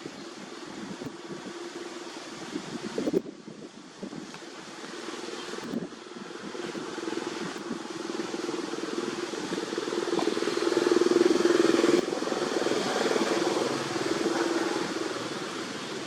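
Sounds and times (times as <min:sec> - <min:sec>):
engine running with fast pulse: 0:04.6 - 0:16.0.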